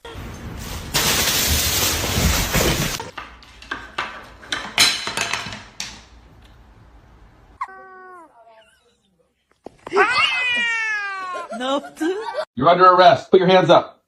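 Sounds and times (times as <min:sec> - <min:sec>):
cat meowing: 0:07.6 - 0:08.7.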